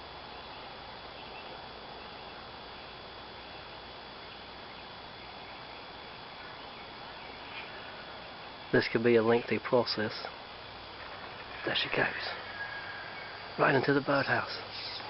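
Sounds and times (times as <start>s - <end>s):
faint high-pitched whine: 0.0s - 15.0s
outdoor background hiss: 0.0s - 15.0s.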